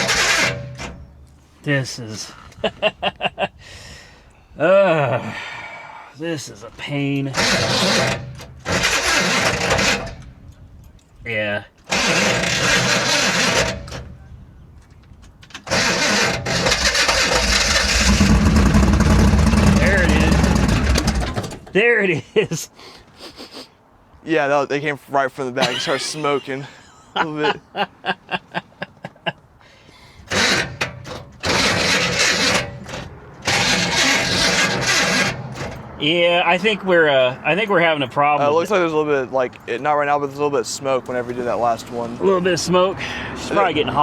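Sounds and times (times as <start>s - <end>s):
car starter cranking: 0.0s - 1.2s, 7.3s - 10.3s, 11.8s - 14.2s, 15.5s - 21.8s, 30.2s - 35.9s
car engine running: 15.7s - 21.6s, 30.3s - 35.8s.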